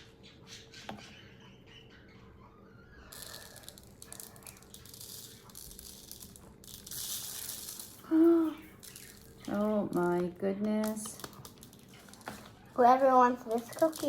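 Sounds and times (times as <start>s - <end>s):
plastic crinkling and rustling: 3.1s - 14.0s
person humming: 8.0s - 8.6s.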